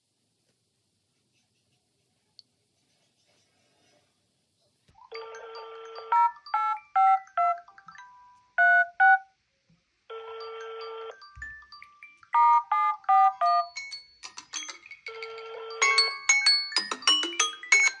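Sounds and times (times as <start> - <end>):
phone ringtone melody: 5.0 - 9.2, 10.1 - 14.2, 14.9 - 18.0.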